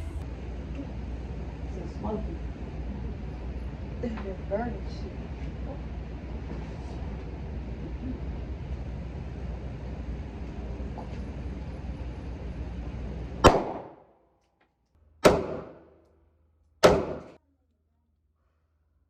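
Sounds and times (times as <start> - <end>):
gunshots with echo: 13.4 - 14.0, 15.2 - 15.9, 16.8 - 17.4.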